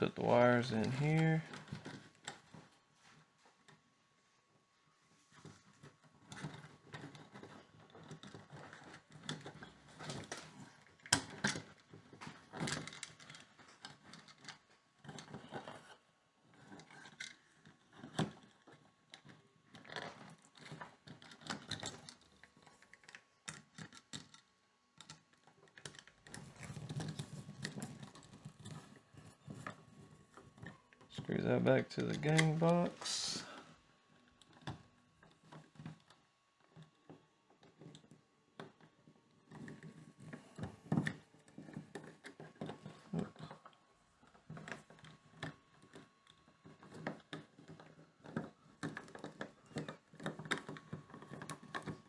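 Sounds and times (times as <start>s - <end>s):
electrical wires rustling and scraping: 0.0s - 24.4s, 25.8s - 33.8s.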